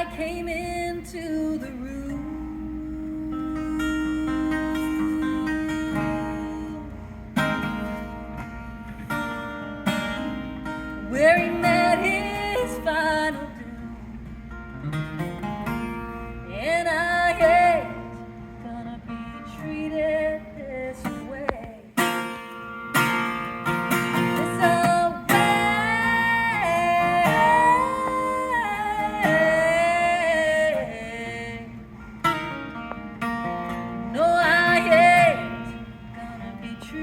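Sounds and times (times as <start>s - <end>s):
woman singing: 0.0s - 8.1s, 11.0s - 14.2s, 16.4s - 22.1s, 24.1s - 32.7s, 34.0s - 37.0s
plucked acoustic guitar: 0.0s - 37.0s.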